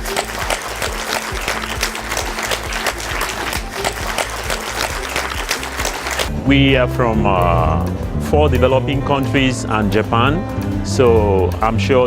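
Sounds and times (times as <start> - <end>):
audience applauding: 0.0 - 6.3
background music: 0.0 - 12.0.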